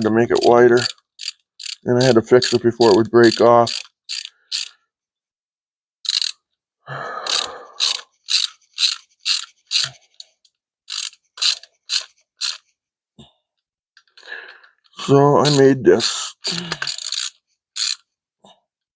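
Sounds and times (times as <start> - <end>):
ratchet wrench clicking: 0.0 - 4.8, 6.0 - 6.4, 7.3 - 10.3, 10.9 - 12.6, 15.0 - 18.1.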